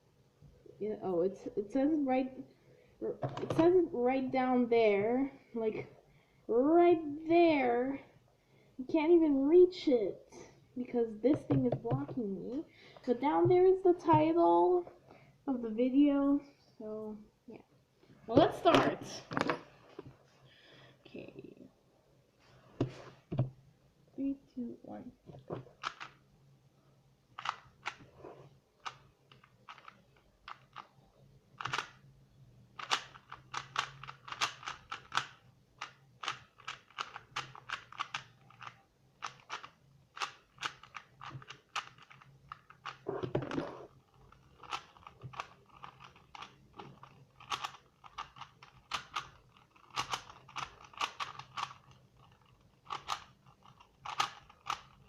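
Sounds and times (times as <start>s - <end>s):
puzzle cube layers clicking: 25.6s - 26.2s, 27.3s - 28.2s, 28.8s - 31.0s, 31.6s - 32.1s, 32.8s - 55.0s
puzzle cube scraping: 32.8s - 55.0s.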